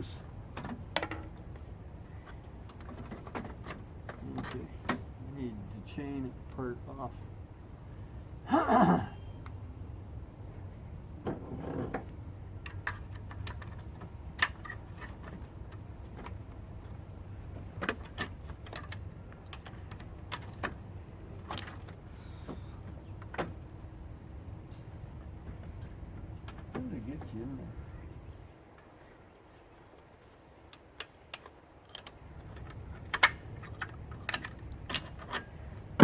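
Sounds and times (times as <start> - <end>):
steady low hum: 0.0 - 29.4.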